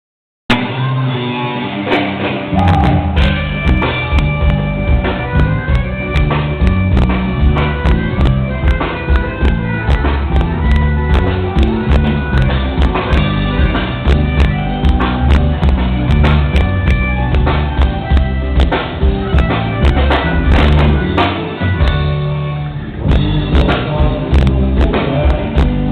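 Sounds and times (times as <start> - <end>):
rock band music: 0.5 - 25.9
drum hits: 2.4 - 22.1.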